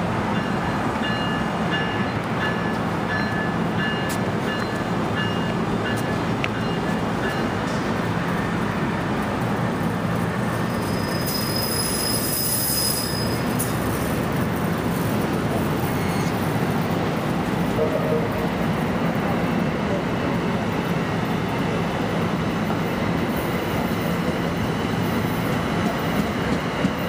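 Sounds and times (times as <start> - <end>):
passenger train rumbling past: 0.0 - 27.0
high-pitched wheel squeal: 10.7 - 13.6, 15.8 - 16.4.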